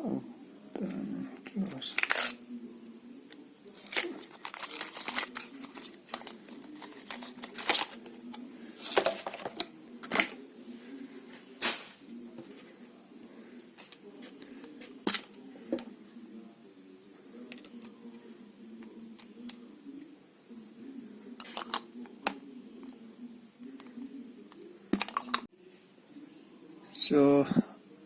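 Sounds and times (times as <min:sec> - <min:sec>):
plastic packaging rustling: 0:03.7 - 0:10.4, 0:11.4 - 0:12.6.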